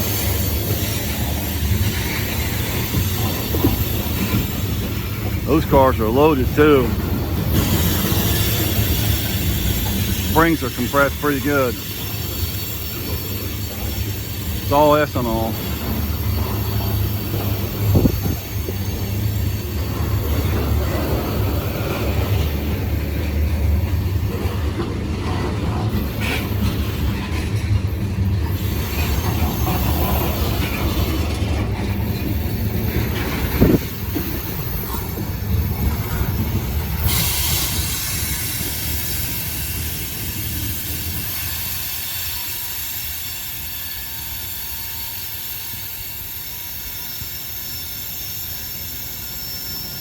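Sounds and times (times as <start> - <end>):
freight train wheel and rail rumble: 0.0 - 50.0.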